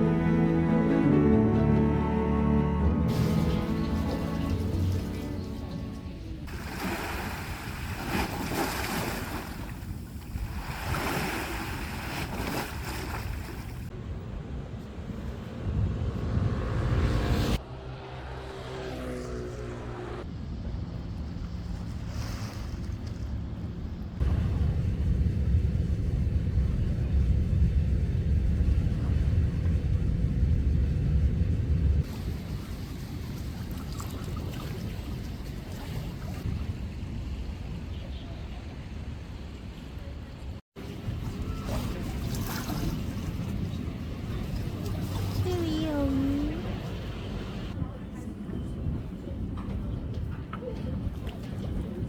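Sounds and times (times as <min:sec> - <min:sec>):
steady low rumble: 0:00.0 - 0:08.5, 0:11.8 - 0:17.6, 0:22.7 - 0:34.3
sea waves breaking on shore: 0:03.1 - 0:13.9, 0:39.4 - 0:47.8.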